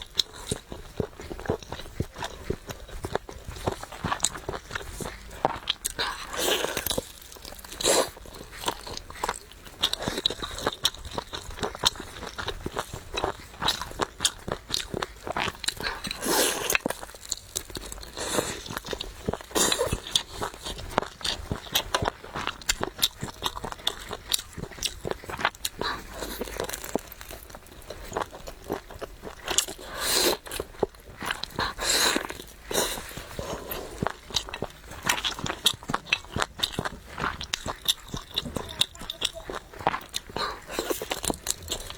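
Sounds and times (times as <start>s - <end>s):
person chewing food: 0.0s - 41.9s.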